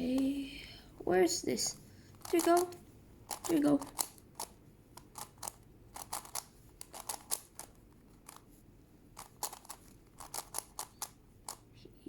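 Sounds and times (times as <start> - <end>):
plastic puzzle clicks: 2.1 - 8.4, 9.2 - 11.7.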